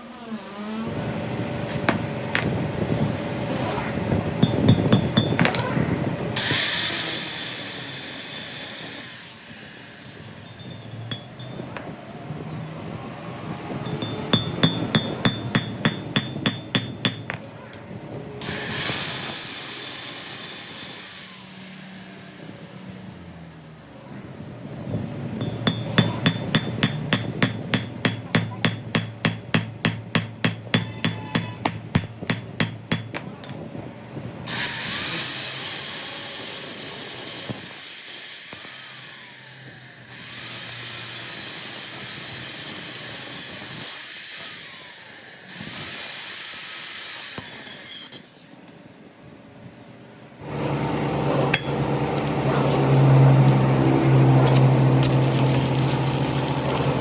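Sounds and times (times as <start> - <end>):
hammer striking metal: 4.4 - 5.8, 10.6 - 12.2, 13.8 - 17.8, 25.3 - 33.6, 51.5 - 52.8
low machine hum: 10.4 - 18.4.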